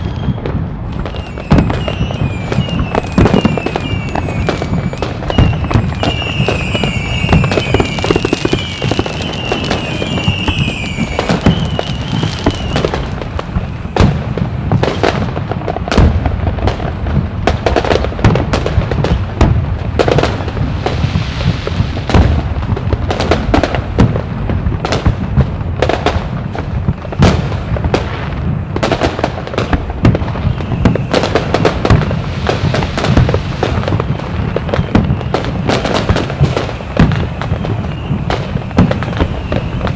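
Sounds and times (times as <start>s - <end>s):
fireworks bangs and crackles: 0.0s - 39.9s
wavering high whistle: 1.0s - 13.0s.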